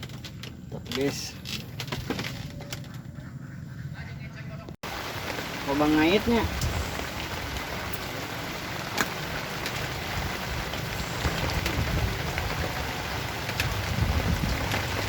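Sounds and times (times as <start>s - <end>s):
rain pattering: 4.8s - 15.0s.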